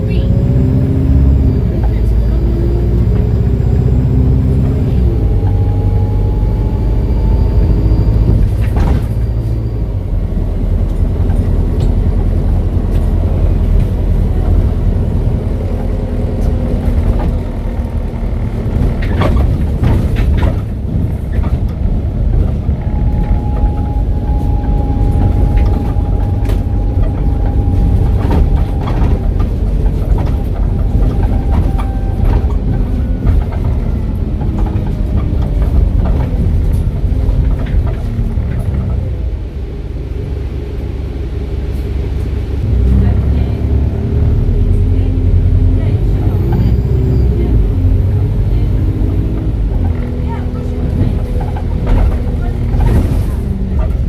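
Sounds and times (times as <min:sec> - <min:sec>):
bus engine and road rumble: 0:00.0 - 0:54.0
knocks and rattles: 0:16.4 - 0:24.1, 0:24.7 - 0:39.2.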